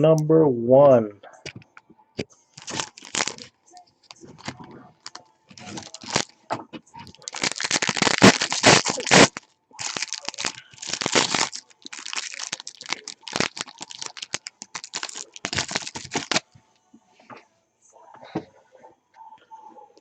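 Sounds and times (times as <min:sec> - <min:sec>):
foil wrapper tearing and crinkling: 0:02.6 - 0:03.5, 0:04.1 - 0:06.4, 0:07.1 - 0:16.4.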